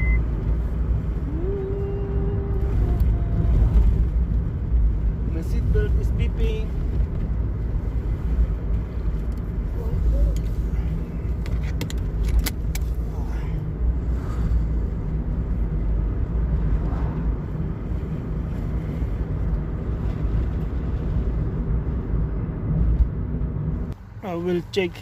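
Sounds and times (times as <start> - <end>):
car engine rumble inside cabin: 0.0 - 25.0.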